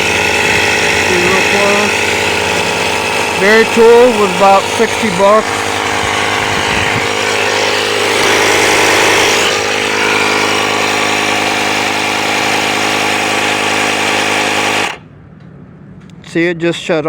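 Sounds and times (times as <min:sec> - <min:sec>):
inflator compressor motor hum: 0:00.0 - 0:15.0.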